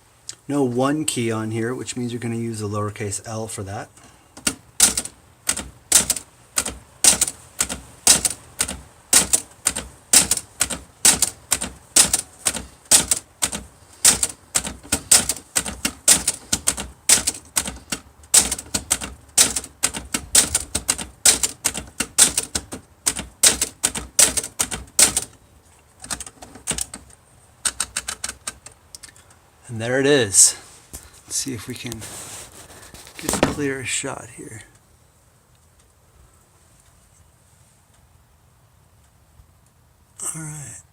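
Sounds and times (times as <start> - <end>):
typewriter typebar strikes: 4.4 - 25.4.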